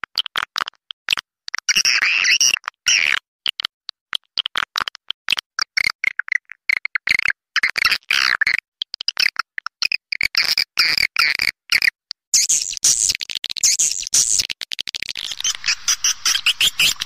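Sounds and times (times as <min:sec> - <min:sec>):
swiftlets twittering: 0:15.2 - 0:17.0.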